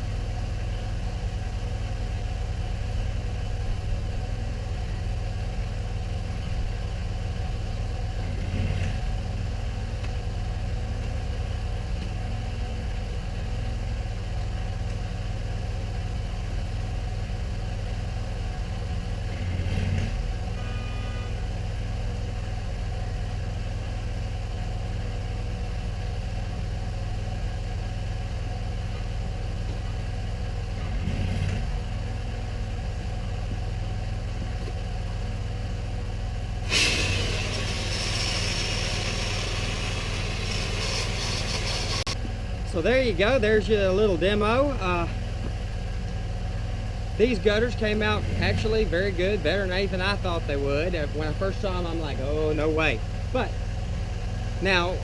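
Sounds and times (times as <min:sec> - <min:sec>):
pressure washer gas engine running: 0:36.6 - 0:42.2.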